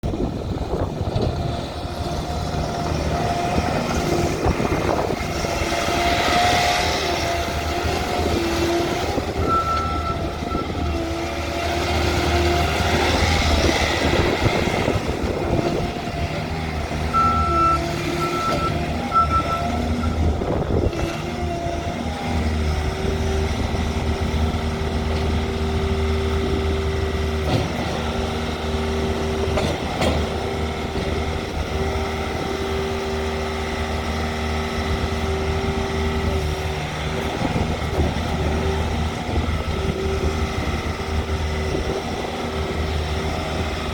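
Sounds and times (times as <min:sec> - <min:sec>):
diesel engine running: 0:00.0 - 0:43.9
backup alarm beeping: 0:17.2 - 0:20.2.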